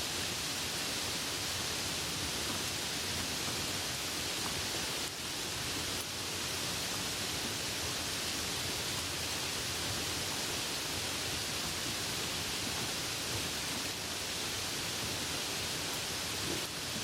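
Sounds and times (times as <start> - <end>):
soft rain falling: 0.0 - 17.0.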